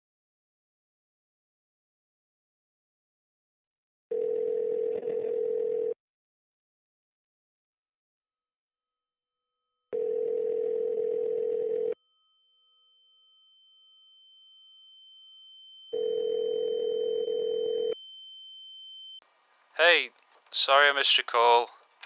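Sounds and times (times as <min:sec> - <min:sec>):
telephone ringback tone: 0:04.1 - 0:06.0, 0:10.0 - 0:12.0, 0:15.9 - 0:18.0.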